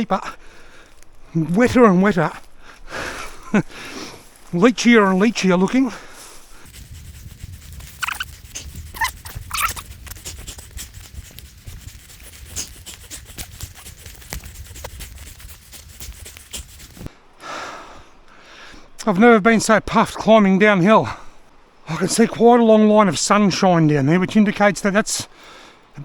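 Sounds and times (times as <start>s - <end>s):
hard puffed breathing: 5.9s - 18.8s.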